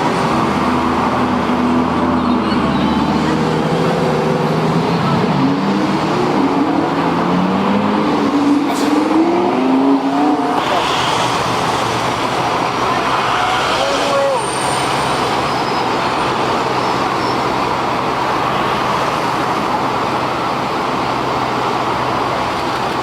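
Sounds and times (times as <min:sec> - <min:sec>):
car engine revving: 0:00.0 - 0:13.8.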